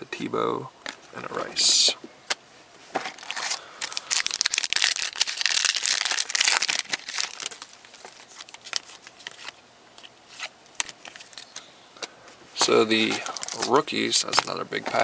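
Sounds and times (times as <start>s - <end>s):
wrapper tearing and crinkling: 3.2s - 9.6s, 13.0s - 14.6s.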